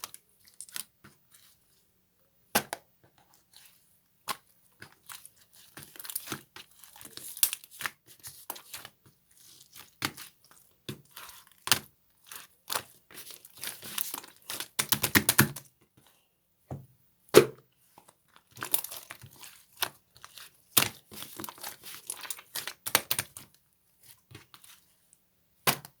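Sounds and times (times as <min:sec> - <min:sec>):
crinkly material crinkling: 0:03.0 - 0:16.2, 0:17.7 - 0:25.2.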